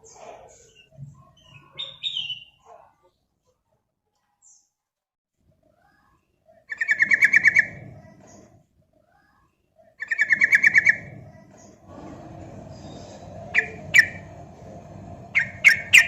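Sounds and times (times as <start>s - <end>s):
bulbul singing: 12.7s - 14.6s, 15.2s - 16.0s.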